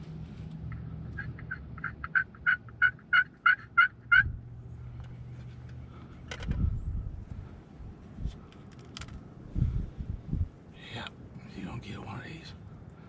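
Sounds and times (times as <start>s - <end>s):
low steady hum: 0.0s - 13.0s
wild turkey yelping: 0.7s - 4.4s.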